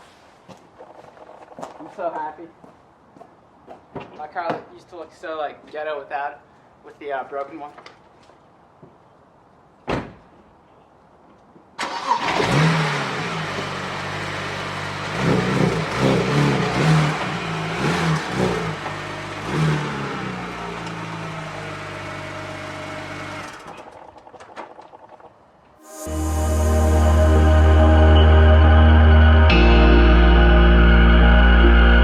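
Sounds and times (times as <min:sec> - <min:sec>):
car engine starting and revving: 0:11.8 - 0:23.9
car engine idling: 0:11.9 - 0:24.0.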